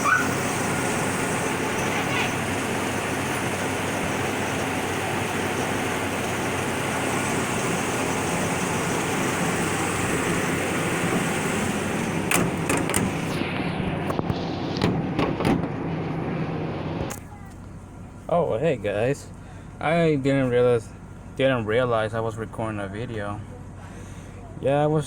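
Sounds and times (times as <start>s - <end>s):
truck engine running: 0.0s - 25.0s
sharp clicks and knocks: 12.3s - 13.2s.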